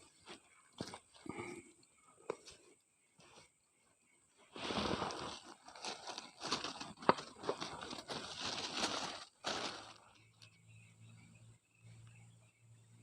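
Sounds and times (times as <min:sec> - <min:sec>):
rustling and crunching handling noise: 0:04.4 - 0:10.6.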